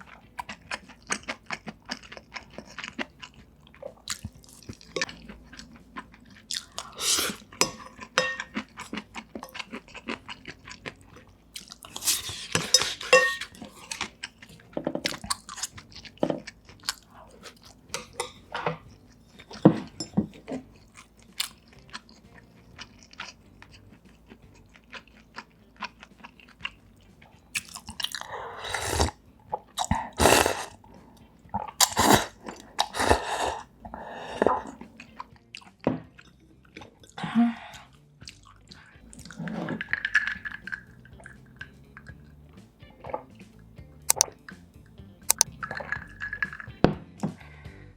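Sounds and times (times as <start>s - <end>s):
chewing and crunching food: 0.0s - 47.7s
mouth clicks: 44.1s - 44.5s, 45.2s - 45.7s.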